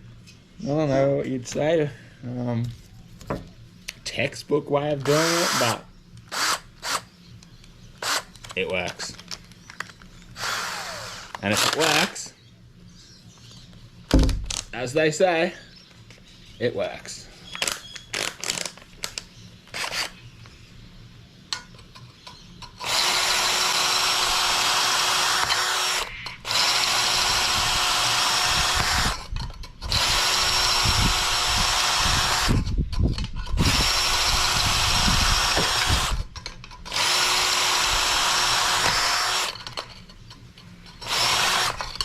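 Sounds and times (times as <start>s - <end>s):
power drill boring into metal: 5.0s - 7.0s, 10.4s - 12.2s, 22.8s - 32.7s, 33.6s - 36.3s, 36.9s - 39.6s, 41.0s - 42.0s.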